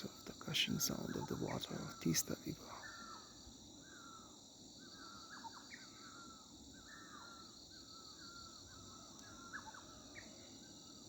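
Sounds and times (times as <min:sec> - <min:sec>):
high insect drone: 0:00.0 - 0:11.0.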